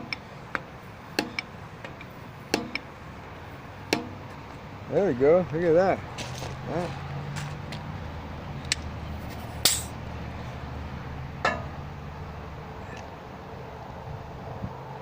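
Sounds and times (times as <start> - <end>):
freeway traffic drone: 0.0 - 15.0.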